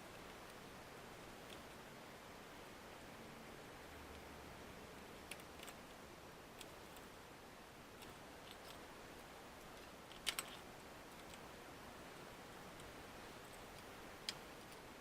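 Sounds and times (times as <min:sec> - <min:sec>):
steady low hiss: 0:00.0 - 0:15.0
tools and small parts clicking: 0:09.7 - 0:11.5.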